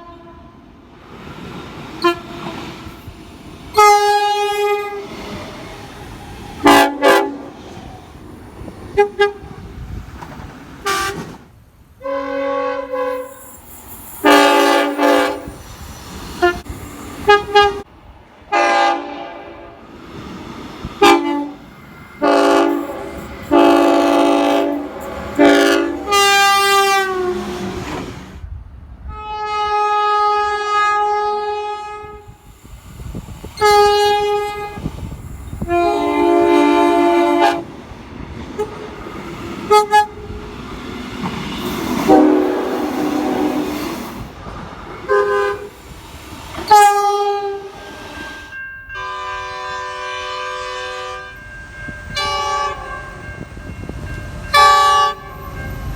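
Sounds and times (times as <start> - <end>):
train horn blasts: 0.0 - 0.7, 2.0 - 2.6, 3.7 - 5.1, 6.6 - 7.6, 8.9 - 9.6, 10.8 - 11.4, 12.0 - 13.4, 14.2 - 15.6, 16.4 - 17.9, 18.5 - 19.8, 21.0 - 28.2, 29.1 - 32.4, 33.6 - 34.9, 35.6 - 37.7, 38.6 - 38.9, 39.7 - 40.5, 41.9 - 44.0, 45.0 - 45.7, 46.7 - 55.7.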